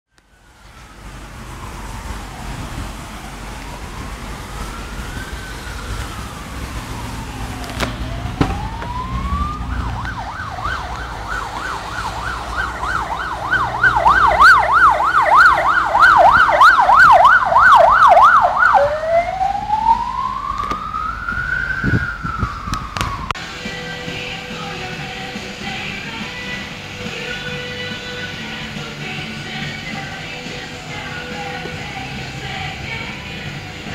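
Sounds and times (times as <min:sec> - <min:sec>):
low road rumble: 0:00.1 - 0:33.9
ambulance siren: 0:00.2 - 0:23.4.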